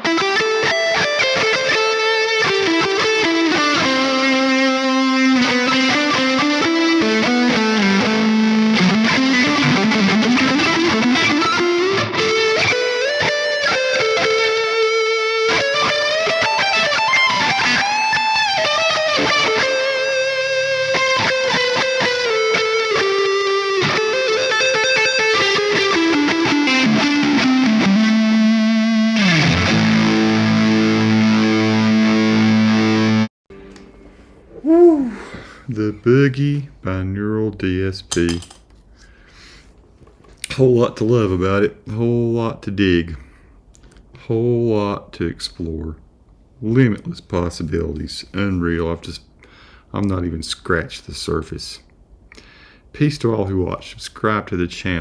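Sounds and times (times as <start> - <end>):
electric guitar lead: 0.0 - 34.2.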